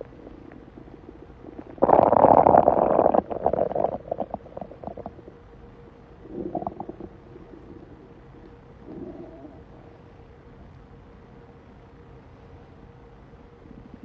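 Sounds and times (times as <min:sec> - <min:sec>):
stomach growling: 0:00.0 - 0:05.4, 0:06.2 - 0:10.0.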